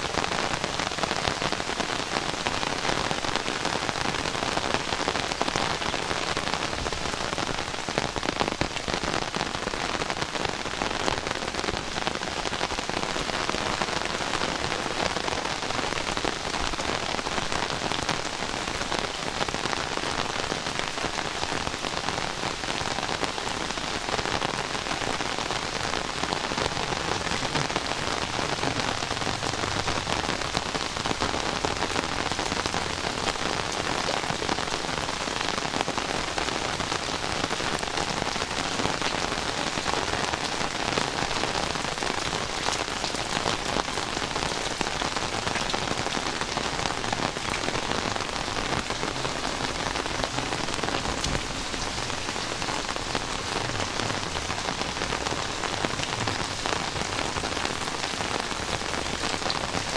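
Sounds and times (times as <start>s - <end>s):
heavy rain pattering: 0.0s - 59.9s.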